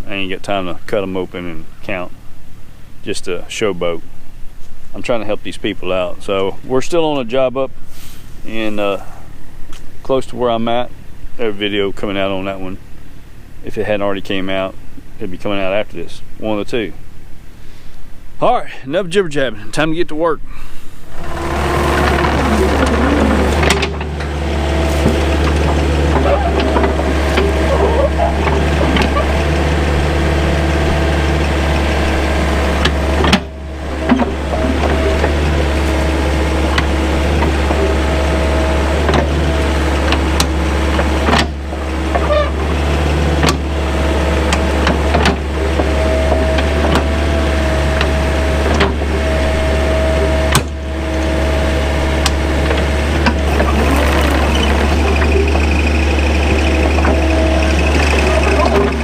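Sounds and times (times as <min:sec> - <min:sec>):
steady whine: 0:20.8 - 0:42.7, 0:49.0 - 0:59.0
diesel engine droning: 0:20.8 - 0:59.0.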